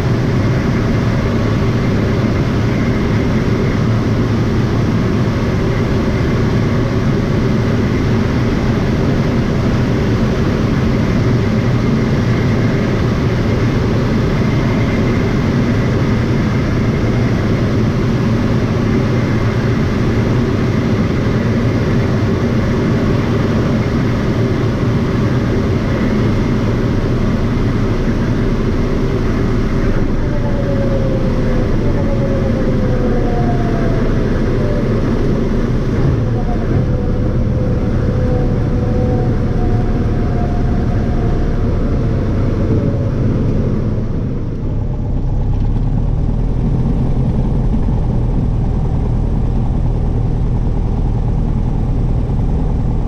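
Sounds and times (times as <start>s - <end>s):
propeller airplane engine drone: 0.0s - 53.0s.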